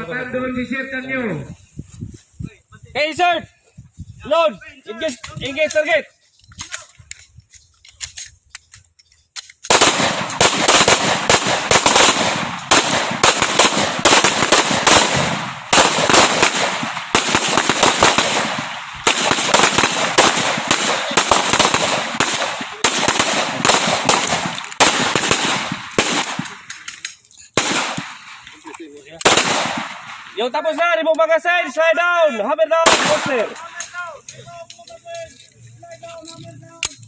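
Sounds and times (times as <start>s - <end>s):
pistols firing rapidly: 9.7s - 26.8s, 27.6s - 28.4s, 29.2s - 30.4s, 32.8s - 33.6s.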